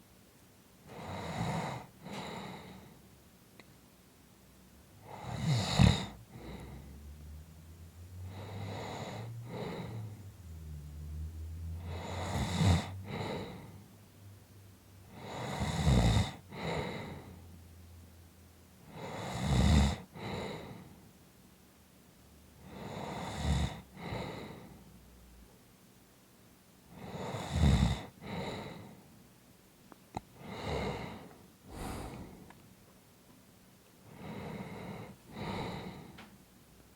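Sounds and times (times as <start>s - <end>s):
person snoring: 5.0s - 7.4s, 8.1s - 10.3s, 11.8s - 13.8s, 15.1s - 17.4s, 18.9s - 20.8s, 30.4s - 32.5s.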